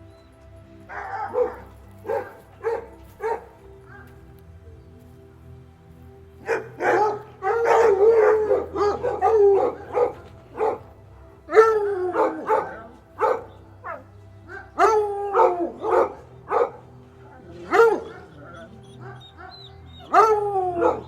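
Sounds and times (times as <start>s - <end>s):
dog barking: 0.9s - 4.1s, 6.4s - 10.9s, 11.5s - 16.8s, 17.4s - 21.0s.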